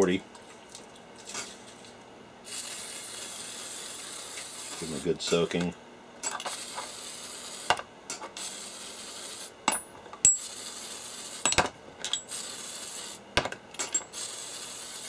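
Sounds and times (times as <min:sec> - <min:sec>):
aerosol can spraying: 0:02.5 - 0:05.1, 0:06.5 - 0:07.7, 0:14.2 - 0:15.0
steel sockets clinking on metal: 0:11.4 - 0:12.4, 0:13.4 - 0:14.2.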